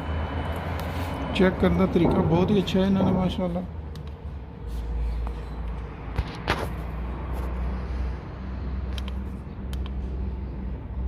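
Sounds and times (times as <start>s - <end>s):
sharp clicks: 8.9s - 10.0s.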